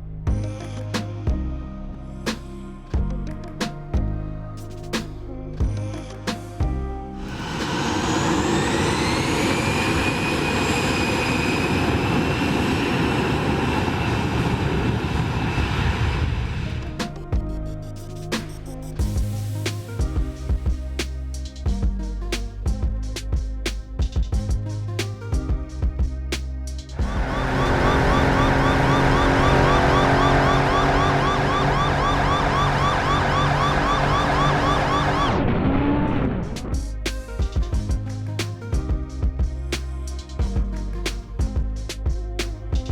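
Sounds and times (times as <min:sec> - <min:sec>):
aircraft engine whine: 0:07.2 - 0:17.0, 0:27.0 - 0:36.8
steady hum: 0:21.6 - 0:42.9
electronic siren yelping: 0:27.1 - 0:35.6.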